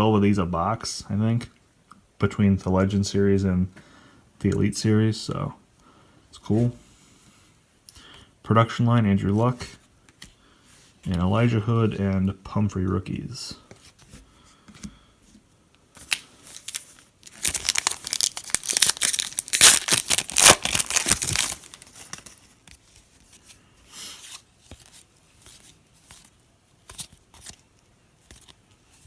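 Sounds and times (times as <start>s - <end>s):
foil wrapper tearing and crinkling: 16.1s - 22.4s.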